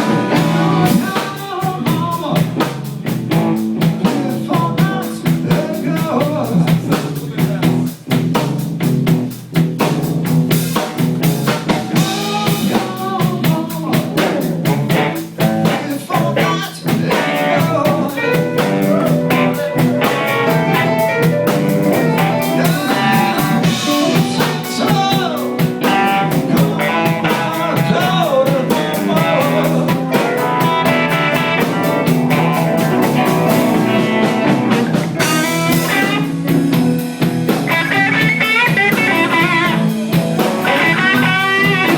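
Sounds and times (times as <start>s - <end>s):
electric guitar lines: 0.0s - 1.2s, 17.1s - 41.9s
drum kit beat: 0.0s - 41.9s
live blues band playing: 0.0s - 41.9s.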